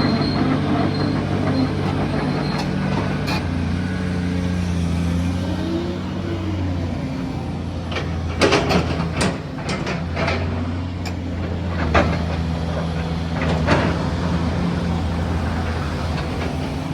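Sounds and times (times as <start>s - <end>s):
excavator diesel engine running: 0.0s - 16.9s
metallic knocks and clanks: 7.9s - 14.1s.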